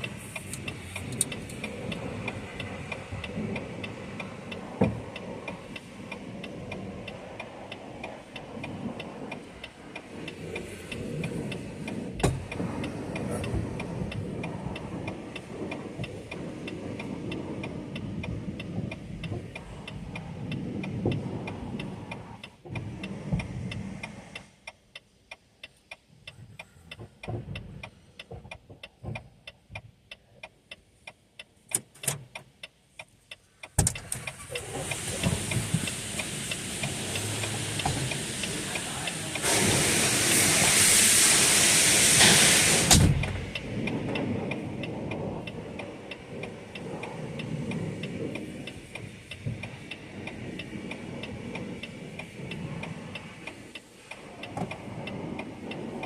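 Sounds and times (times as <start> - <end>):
steady even ticking: 0.0 - 56.0
pressure washer spray: 34.3 - 55.8.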